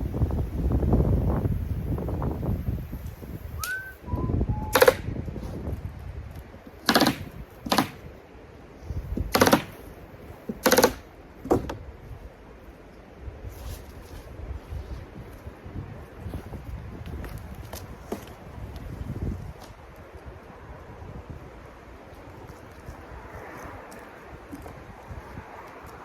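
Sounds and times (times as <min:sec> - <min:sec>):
wind on microphone: 0:00.0 - 0:08.2, 0:08.8 - 0:09.4, 0:13.3 - 0:26.0
stapler firing staples: 0:04.7 - 0:05.0, 0:06.8 - 0:08.0, 0:09.3 - 0:09.8, 0:10.6 - 0:11.0.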